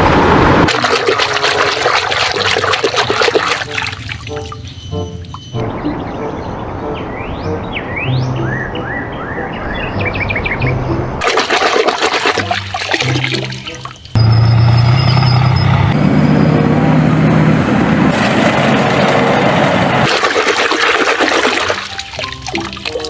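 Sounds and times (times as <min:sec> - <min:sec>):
running water splashing: 0:00.7 - 0:05.4, 0:11.2 - 0:14.2, 0:20.1 - 0:23.0
background music: 0:00.7 - 0:14.0, 0:21.0 - 0:23.0.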